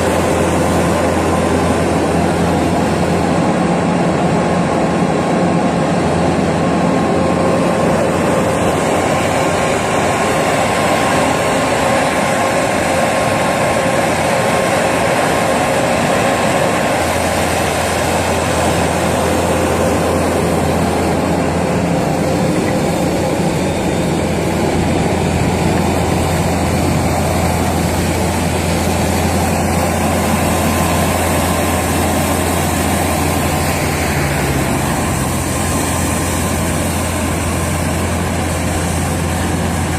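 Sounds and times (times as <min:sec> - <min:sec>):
loader engine droning: 0:00.0 - 0:39.9.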